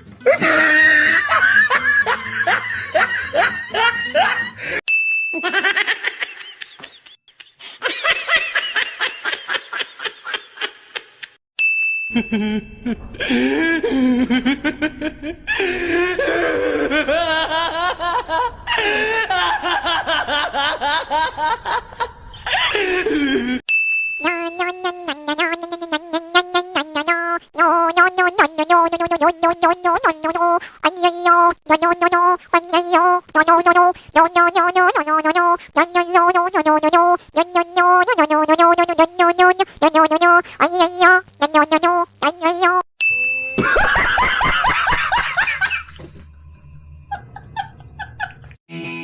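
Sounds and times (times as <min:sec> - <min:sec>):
recorded laughter: 0:00.2 - 0:04.8, 0:05.4 - 0:11.4, 0:12.2 - 0:23.6, 0:43.6 - 0:46.2, 0:47.1 - 0:48.6
short high beep: 0:43.0 - 0:43.6.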